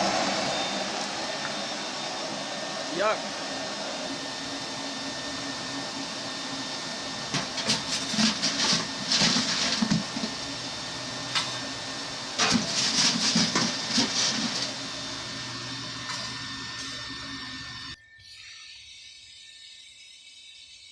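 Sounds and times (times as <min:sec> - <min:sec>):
air blower humming: 0:00.0 - 0:18.0
coal fire hissing and crackling: 0:00.0 - 0:18.0.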